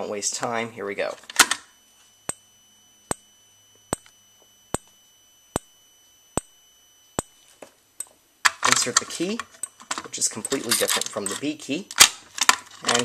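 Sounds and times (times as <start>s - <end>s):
faint high-pitched whine: 0.0s - 13.0s
strobe ticking: 1.2s - 11.5s.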